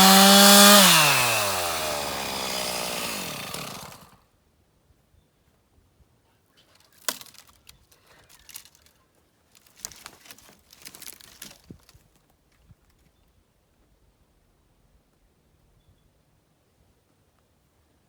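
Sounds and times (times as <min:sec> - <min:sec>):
rustling and crackling: 0:06.6 - 0:13.1.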